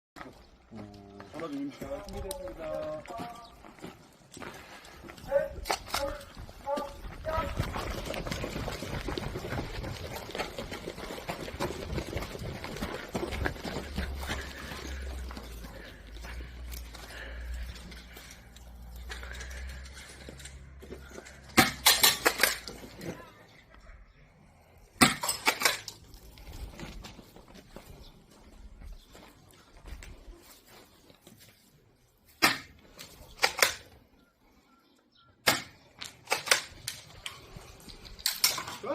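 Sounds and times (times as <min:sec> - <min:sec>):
rustling and crunching through brush: 0:00.3 - 0:21.4, 0:25.7 - 0:33.4
airsoft shotgun pumping and firing: 0:35.5 - 0:37.0.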